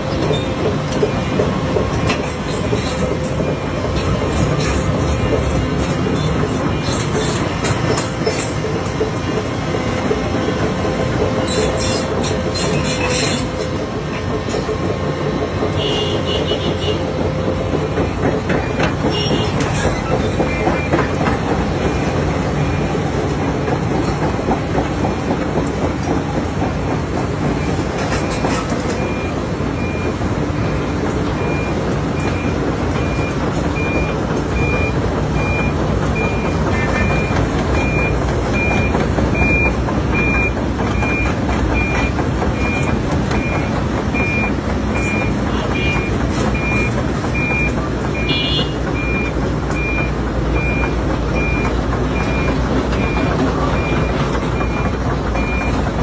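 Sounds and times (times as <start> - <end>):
heavy machinery engines rumbling: 0.0 - 56.0
reversing alarm beeping: 27.6 - 55.9.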